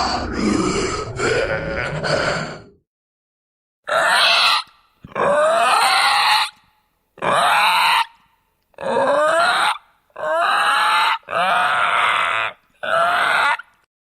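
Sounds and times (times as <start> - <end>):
person growling and snarling: 0.0 - 2.8.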